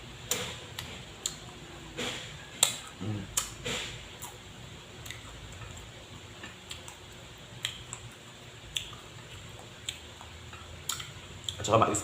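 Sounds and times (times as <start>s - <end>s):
chewing clicks and smacks: 2.6s - 3.6s, 5.0s - 11.6s.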